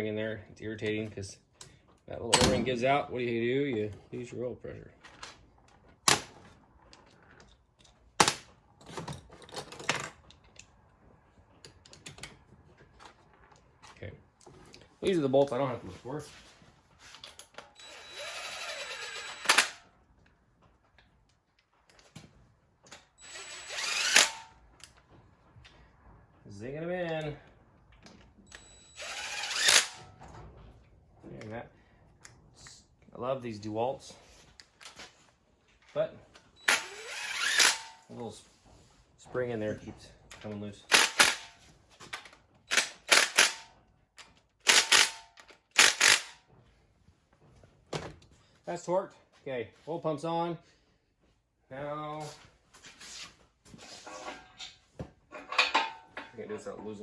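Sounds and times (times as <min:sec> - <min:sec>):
power driver whining: 0:17.6 - 0:19.8, 0:23.2 - 0:24.6, 0:28.5 - 0:30.1, 0:36.6 - 0:38.1, 0:44.6 - 0:46.4
torque wrench clicking: 0:23.3 - 0:24.4, 0:28.5 - 0:30.0, 0:36.7 - 0:37.9, 0:42.7 - 0:43.6, 0:44.7 - 0:46.4.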